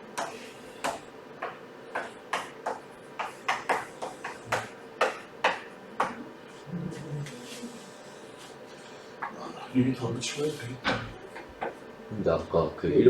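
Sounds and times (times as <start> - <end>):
writing taps and clicks: 0.2 - 6.2.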